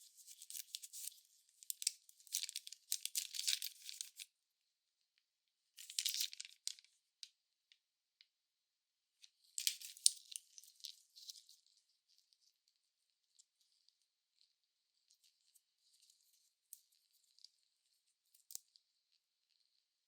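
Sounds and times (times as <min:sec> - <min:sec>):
wrapper crackling and tearing: 0:05.8 - 0:06.7.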